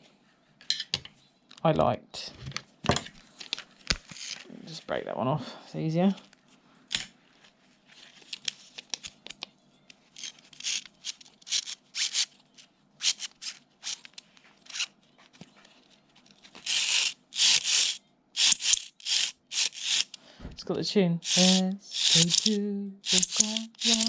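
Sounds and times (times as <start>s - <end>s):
rasping scrapes: 21.3s - 22.5s
plastic parts cracking and clicking: 21.3s - 24.0s.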